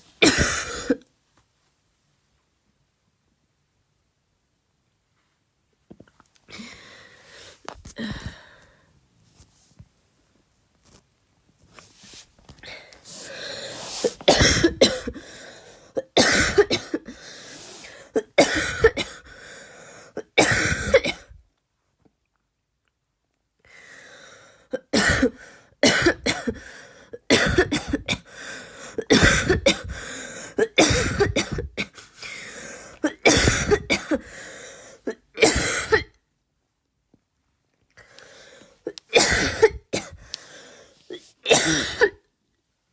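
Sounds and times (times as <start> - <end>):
woman coughing harshly: 0.2 - 1.0, 14.0 - 15.2, 16.0 - 17.2, 18.1 - 19.3, 20.2 - 21.4, 24.8 - 28.3, 28.9 - 34.4, 35.0 - 36.2, 38.9 - 40.2, 41.4 - 42.2.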